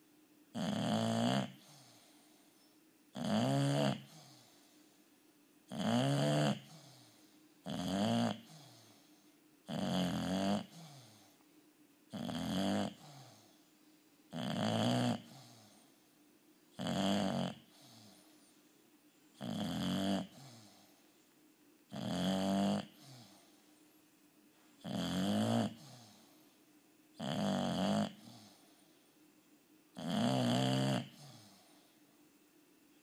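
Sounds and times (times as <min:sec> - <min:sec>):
dog snoring: 0:00.5 - 0:02.5, 0:03.1 - 0:04.8, 0:05.7 - 0:11.4, 0:12.1 - 0:13.6, 0:14.3 - 0:16.0, 0:16.7 - 0:18.5, 0:19.4 - 0:21.0, 0:21.9 - 0:23.7, 0:24.8 - 0:26.5, 0:27.2 - 0:28.9, 0:29.9 - 0:32.0
quiet breathing: 0:01.5 - 0:02.9, 0:03.9 - 0:05.3, 0:06.5 - 0:07.7, 0:08.3 - 0:09.7, 0:10.6 - 0:11.8, 0:12.8 - 0:14.4, 0:15.1 - 0:16.8, 0:17.5 - 0:19.6, 0:20.2 - 0:21.4, 0:22.4 - 0:24.9, 0:25.7 - 0:26.8, 0:28.1 - 0:29.4, 0:31.0 - 0:32.3.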